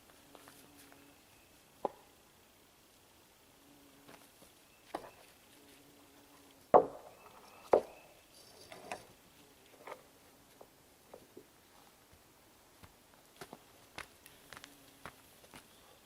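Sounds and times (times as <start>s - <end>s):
sharp knocks and clunks: 6.7s - 8.0s.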